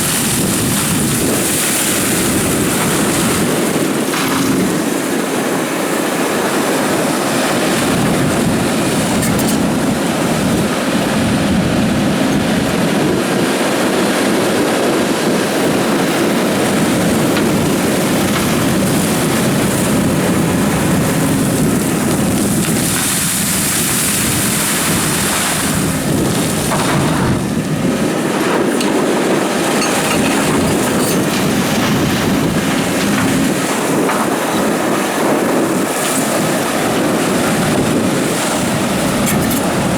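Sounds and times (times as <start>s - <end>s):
gravel grinding against bucket: 0.0s - 5.5s, 15.6s - 39.9s
excavator engine and hydraulics: 0.0s - 39.9s.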